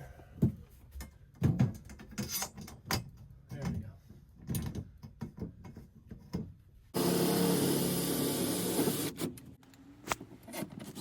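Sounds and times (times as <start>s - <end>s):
power drill running: 7.0s - 9.3s.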